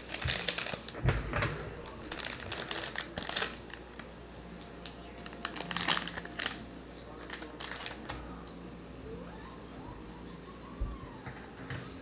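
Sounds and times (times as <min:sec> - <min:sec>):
plastic bag crinkling: 0:00.0 - 0:08.6.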